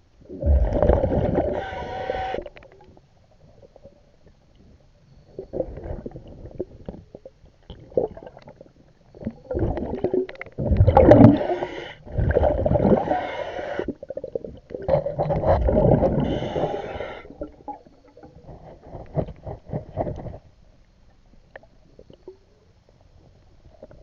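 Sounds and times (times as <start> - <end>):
underwater regulator bubbles gurgling: 0.2 - 3.0, 5.3 - 20.4.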